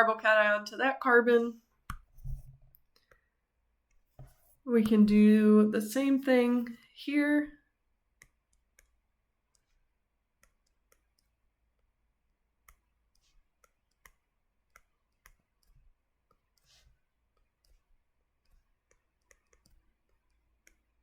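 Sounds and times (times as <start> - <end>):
faint clicks and taps: 1.8 - 5.2, 8.2 - 11.9, 12.6 - 21.0.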